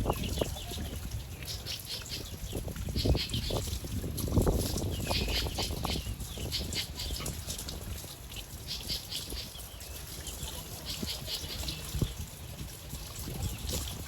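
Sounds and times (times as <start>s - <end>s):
birds chirping: 0.0s - 3.7s, 4.8s - 7.6s, 8.3s - 12.3s.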